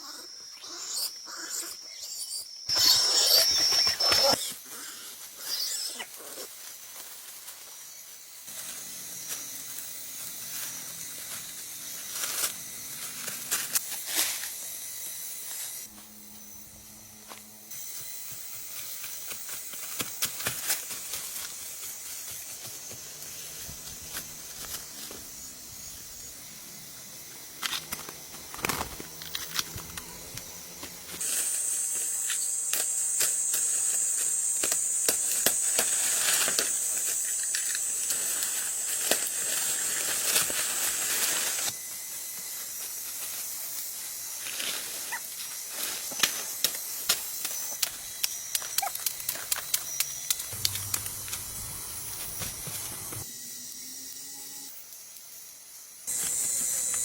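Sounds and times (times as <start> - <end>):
steady high hiss: 6.6 - 57.0
steady high buzz: 7.9 - 57.0.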